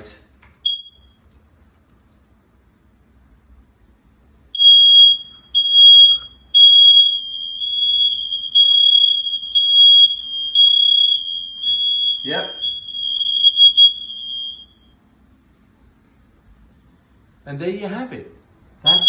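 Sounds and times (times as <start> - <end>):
smoke alarm beeping: 0.6 - 1.3, 4.5 - 15.0, 18.8 - 19.0
faint alarm tone: 4.6 - 15.0.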